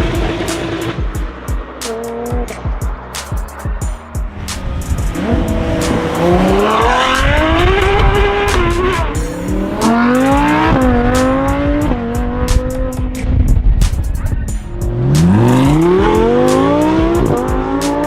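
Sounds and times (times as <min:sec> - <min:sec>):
sports car engine accelerating: 0:00.0 - 0:18.0
sharp exhaust cracks: 0:04.2 - 0:18.0.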